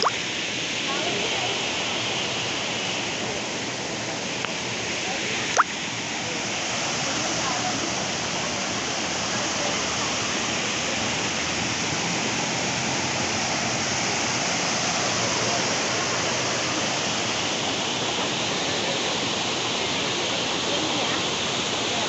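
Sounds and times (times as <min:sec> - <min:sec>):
waterfall roaring: 0:00.0 - 0:22.0.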